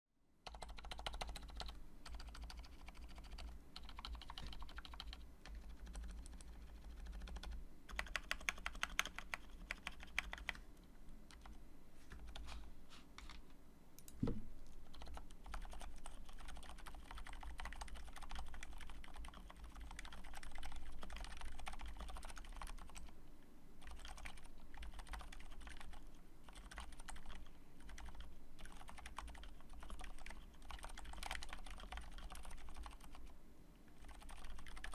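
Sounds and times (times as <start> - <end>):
low steady hum: 0.2 - 34.9
soft keyboard keystrokes: 0.5 - 12.6
heavy thump: 14.2 - 14.5.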